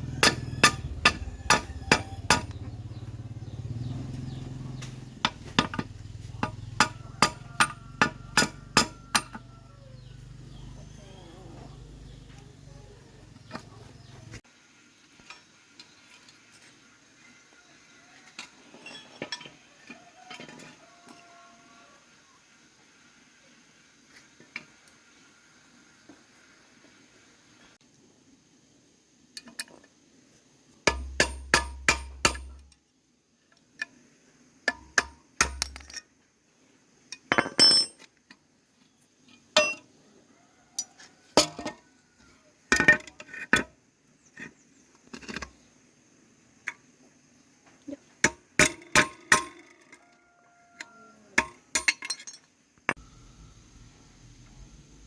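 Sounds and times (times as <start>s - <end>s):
metal tools clinking and knocking: 0.2s - 2.6s, 5.2s - 9.5s, 18.8s - 19.6s, 34.7s - 36.1s, 37.2s - 38.1s, 39.6s - 39.9s, 41.4s - 41.8s, 48.6s - 50.0s, 51.4s - 52.6s.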